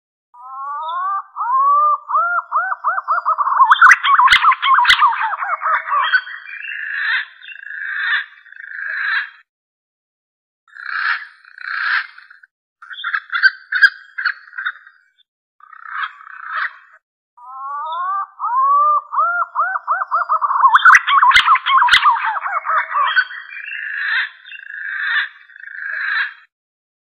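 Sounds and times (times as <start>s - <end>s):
whistled bird call: 0.4s - 7.6s, 17.5s - 26.2s.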